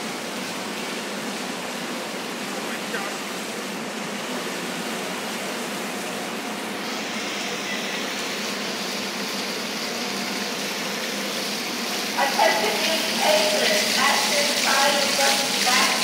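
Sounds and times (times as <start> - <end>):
water pouring in a waterfall: 6.8 - 16.0.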